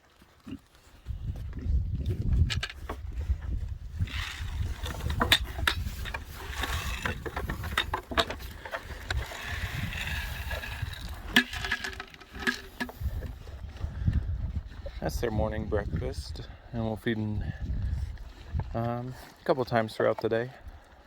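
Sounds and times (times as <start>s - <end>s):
container knocks and rattles: 4.1s - 13.3s.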